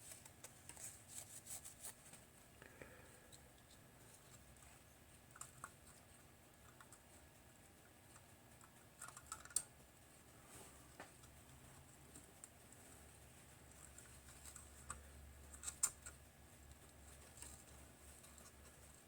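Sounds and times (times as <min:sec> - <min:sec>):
small clicks and taps: 0:08.1 - 0:09.8.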